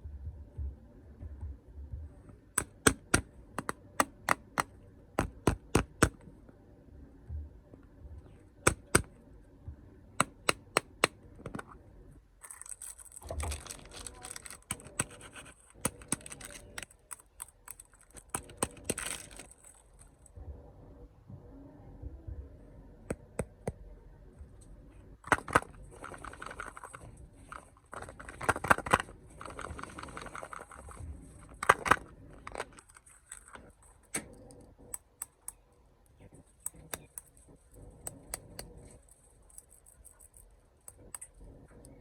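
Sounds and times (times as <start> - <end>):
sharp taps and clicks: 8.7 - 9.1, 10.2 - 11.2
plastic wrapper crinkling and tearing: 12.4 - 20.2.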